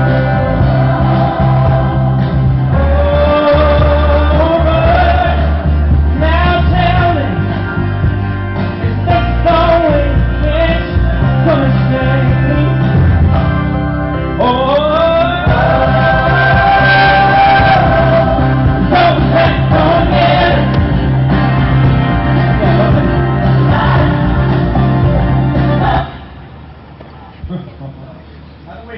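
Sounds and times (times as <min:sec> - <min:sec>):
instrumental backing music: 0:00.0 - 0:26.5
man singing pop ballad: 0:02.7 - 0:07.7, 0:08.8 - 0:13.1, 0:14.4 - 0:20.7.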